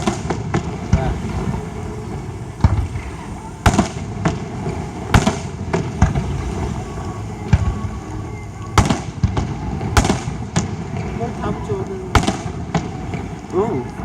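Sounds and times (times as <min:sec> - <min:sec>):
fireworks bangs echoing: 0:00.0 - 0:14.0.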